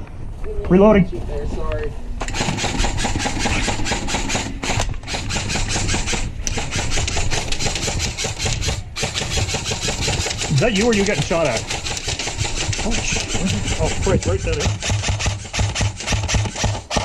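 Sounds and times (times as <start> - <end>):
airsoft gun firing full auto: 2.2 - 17.0.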